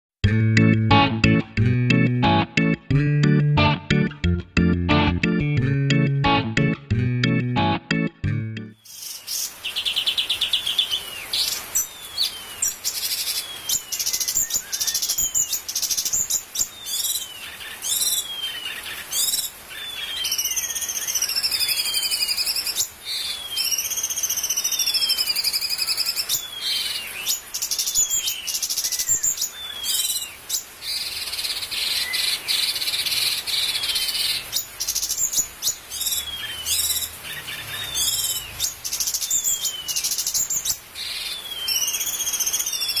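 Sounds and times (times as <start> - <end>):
songbird singing whistles: 8.8 - 30.4, 31.9 - 43.0
buzzy bird trill: 35.2 - 43.0.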